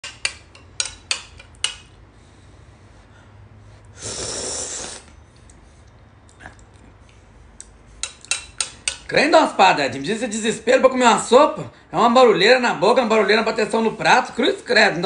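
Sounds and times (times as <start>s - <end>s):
spoon clicking against plate: 0.0s - 1.9s, 8.0s - 9.1s
person slurping soup: 3.9s - 5.2s.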